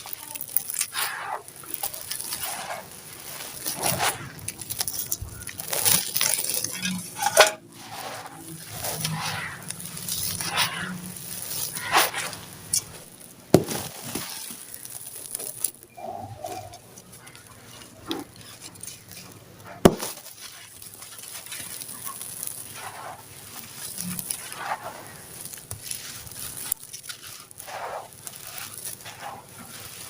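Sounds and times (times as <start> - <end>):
sand-cement crumbling and crunching: 0.0 - 30.0
sharp crack: 11.7 - 15.6, 19.8 - 20.4.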